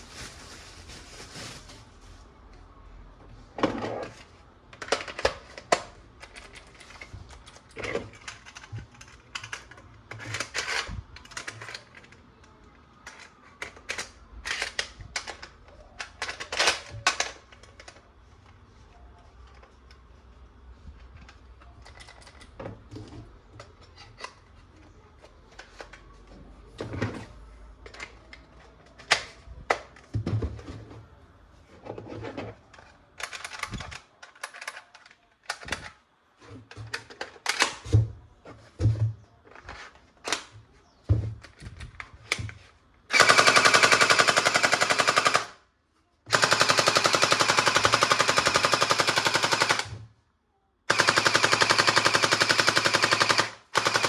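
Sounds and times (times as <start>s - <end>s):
plastic toy gun clicks: 43.1s - 45.6s, 50.9s - 54.0s
toy machine gun sound effect: 50.9s - 54.0s.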